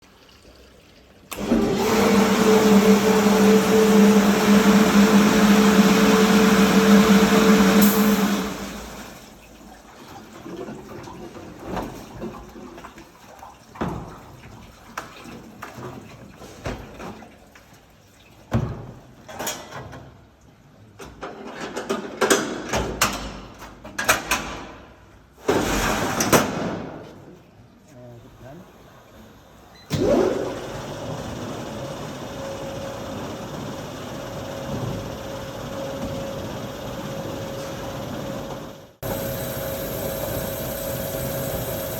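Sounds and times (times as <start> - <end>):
washing machine running: 1.3 - 12.6, 28.7 - 41.9.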